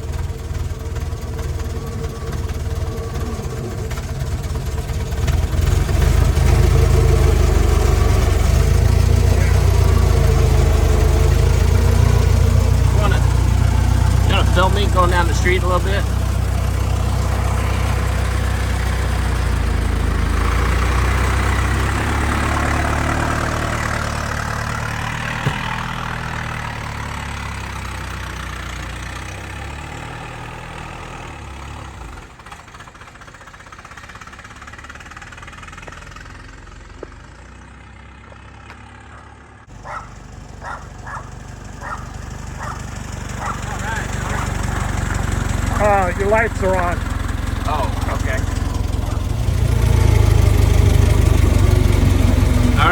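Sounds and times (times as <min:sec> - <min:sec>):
old car engine pulling away: 0:00.0 - 0:52.9.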